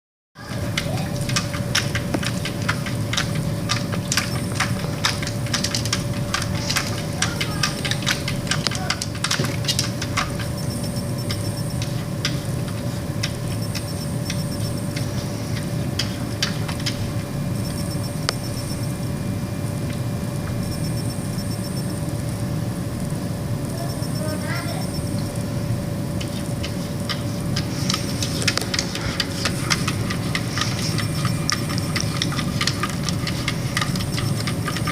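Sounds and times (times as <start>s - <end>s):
cat clawing scratchy clicks: 0.4s - 17.1s, 26.2s - 34.9s
steady low hum: 0.4s - 34.9s.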